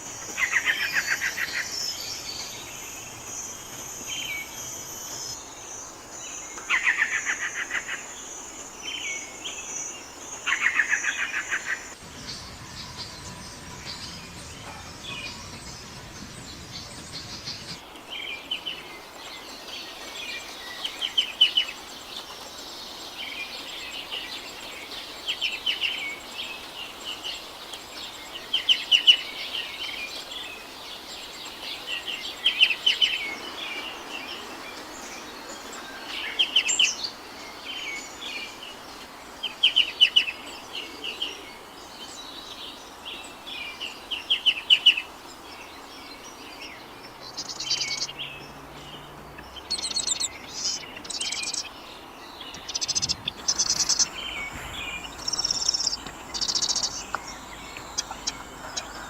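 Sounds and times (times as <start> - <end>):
steady background hiss: 0.0 - 59.0
bird trilling: 52.6 - 59.0.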